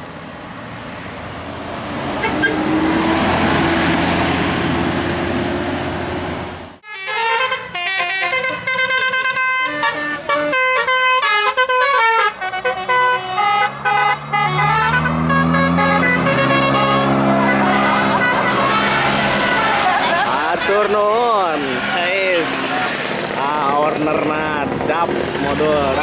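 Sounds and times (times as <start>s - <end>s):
vehicle road noise: 0.0s - 26.0s
engine note rising: 1.4s - 6.8s, 12.7s - 26.0s
multi-tone horn melody: 6.8s - 21.6s.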